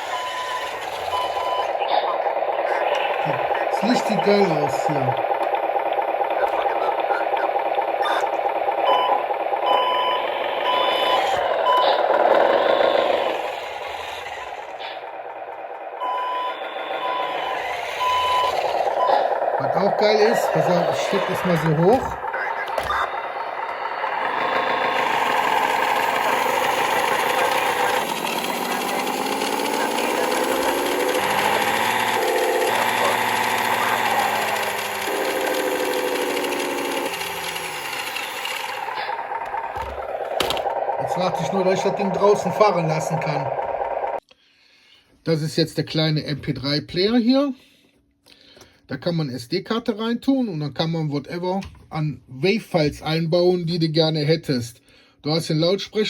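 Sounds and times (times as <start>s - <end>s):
reversing beeper beeps: 0.0s - 5.1s, 8.8s - 12.1s, 15.9s - 35.0s, 41.0s - 44.2s
simulated engine from small loudspeaker: 0.0s - 44.2s.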